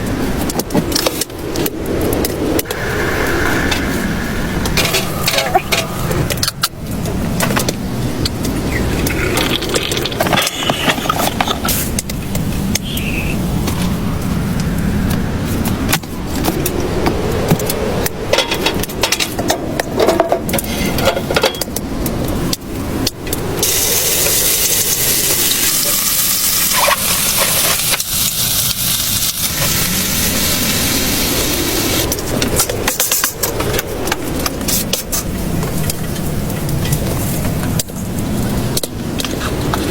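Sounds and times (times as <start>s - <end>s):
sizzling hiss: 23.6s - 32.1s.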